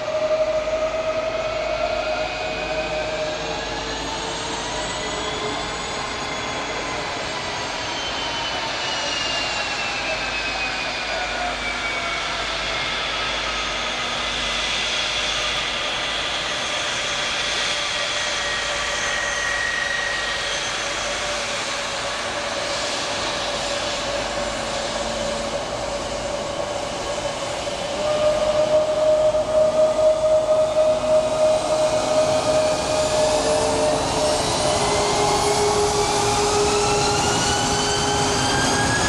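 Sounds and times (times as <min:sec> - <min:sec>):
jet engines roaring and whining: 0:00.0 - 0:39.0
whistling tone gliding down: 0:00.0 - 0:39.0.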